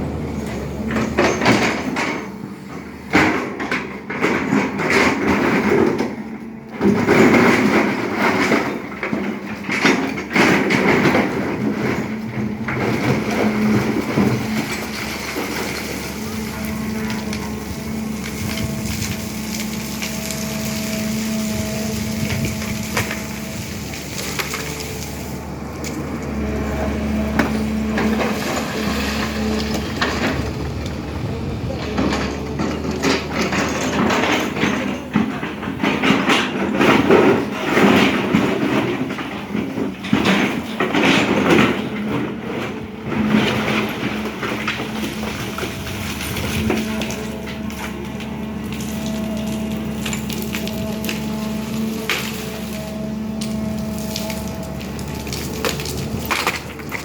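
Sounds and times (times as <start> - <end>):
diesel engine under load: 0.0 - 57.0
steel bucket clanking and scraping: 0.2 - 57.0.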